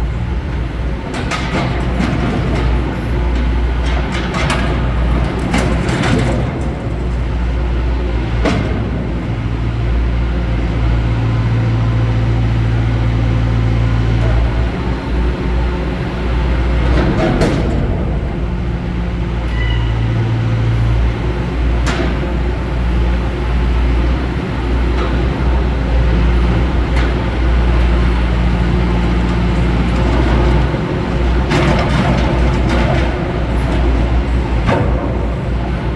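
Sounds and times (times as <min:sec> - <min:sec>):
diesel engine running: 0:00.0 - 0:35.9
sharp knocks and clanks: 0:16.4 - 0:22.5.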